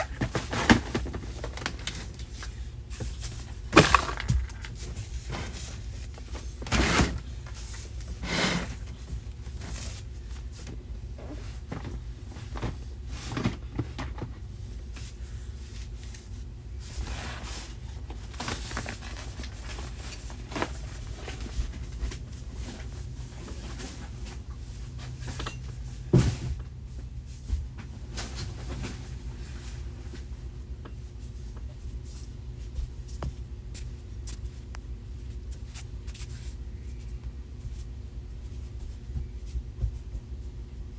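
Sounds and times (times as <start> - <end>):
steady low hum: 0.0 - 40.9
objects knocking and bumping: 3.0 - 5.6.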